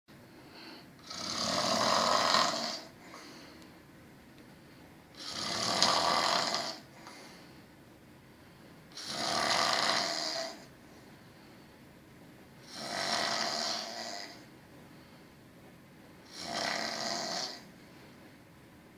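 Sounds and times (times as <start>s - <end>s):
quiet breathing: 0.2s - 5.9s, 6.6s - 9.2s, 10.0s - 16.5s, 17.4s - 18.4s
person snoring: 1.0s - 3.4s, 5.2s - 6.9s, 8.9s - 10.7s, 12.6s - 14.5s, 16.3s - 17.7s.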